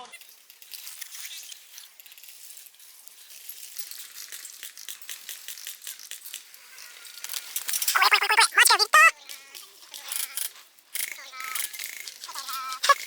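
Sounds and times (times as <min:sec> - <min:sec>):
dry leaves and twigs crackling: 0:00.0 - 0:08.3, 0:09.1 - 0:13.0.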